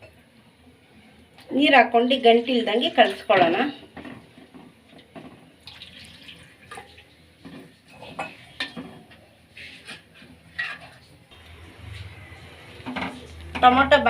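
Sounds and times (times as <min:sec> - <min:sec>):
water mixed with cornflour by hand: 0:01.4 - 0:03.9
small splashes: 0:05.6 - 0:07.1.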